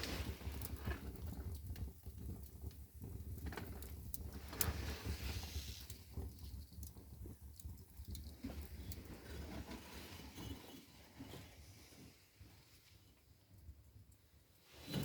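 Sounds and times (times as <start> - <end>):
wood fire crackling and popping: 0.0 - 10.8
low fire rumble: 0.0 - 15.0.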